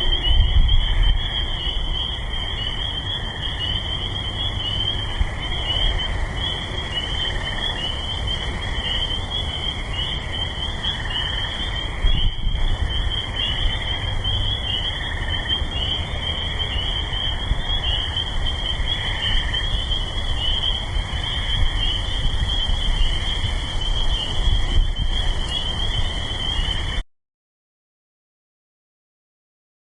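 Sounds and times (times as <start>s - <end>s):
distant highway traffic rumble: 0.0s - 27.0s
frogs calling in chorus: 0.0s - 27.0s.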